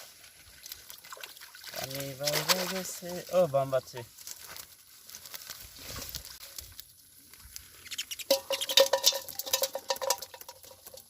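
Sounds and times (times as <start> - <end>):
fish flapping and slapping: 0.4 - 3.1, 8.1 - 11.0.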